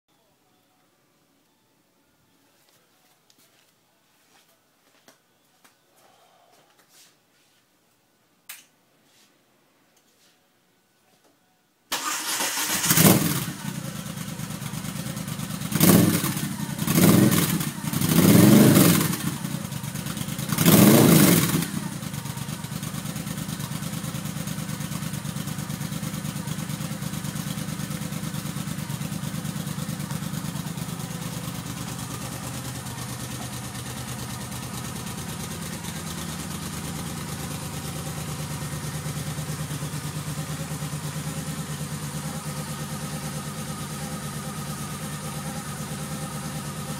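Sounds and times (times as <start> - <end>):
motorcycle engine idling and revving: 12.2 - 46.9.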